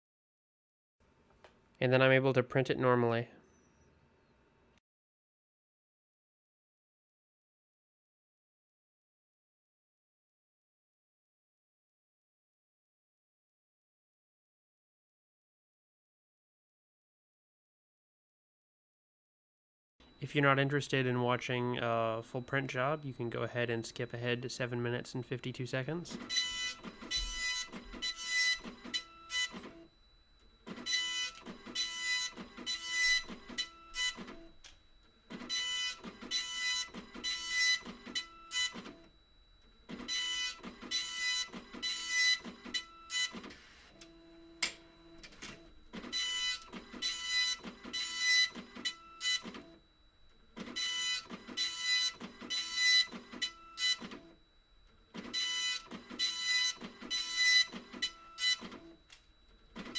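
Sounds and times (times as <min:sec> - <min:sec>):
low mechanical hum: 0:20.0 - 0:59.9
dot-matrix printer print head buzzing: 0:25.9 - 0:59.9.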